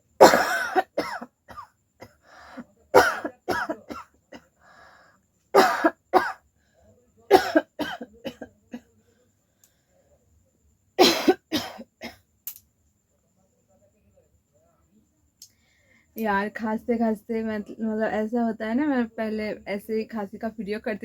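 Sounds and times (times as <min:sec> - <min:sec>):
woman coughing: 0:00.2 - 0:02.2, 0:02.9 - 0:04.4, 0:05.6 - 0:06.4, 0:07.3 - 0:08.8, 0:11.0 - 0:12.2.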